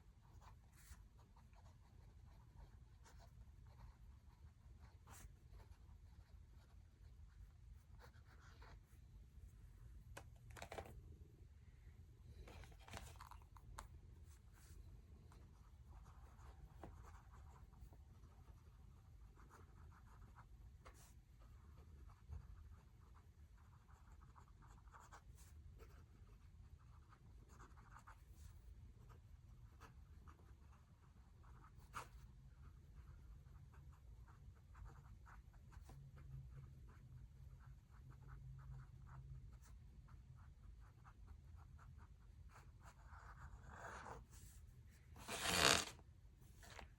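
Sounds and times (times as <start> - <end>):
low steady room hum: 0.0 - 46.9
pen scratching on paper: 0.2 - 8.9, 14.3 - 36.0, 40.4 - 44.6, 45.2 - 46.0.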